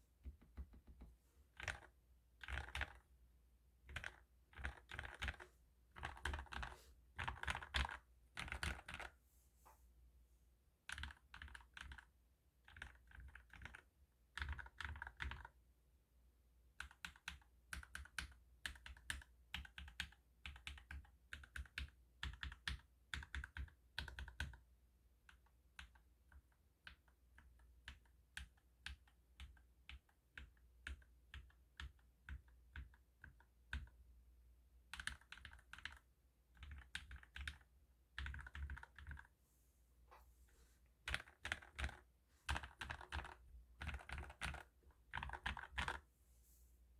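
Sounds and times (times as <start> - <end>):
mechanical keyboard typing: 1.6 - 3.0, 3.9 - 5.4, 6.0 - 9.1, 10.9 - 15.5, 34.9 - 39.3, 41.1 - 46.0.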